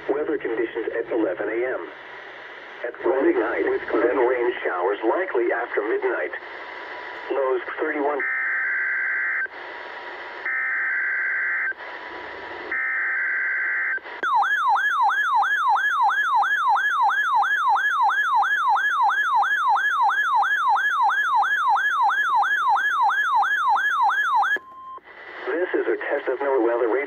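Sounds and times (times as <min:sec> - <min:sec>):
radio hiss: 0:00.0 - 0:08.2, 0:09.5 - 0:10.5, 0:11.7 - 0:12.7, 0:25.0 - 0:27.0
warbling alarm siren tone: 0:12.7 - 0:24.6.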